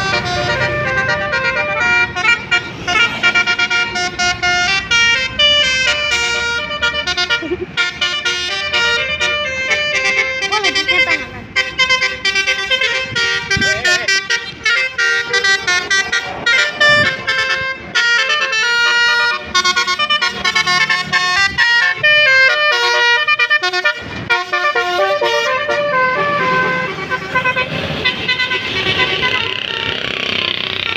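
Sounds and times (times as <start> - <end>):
musical air horn melody: 0.0 - 30.1.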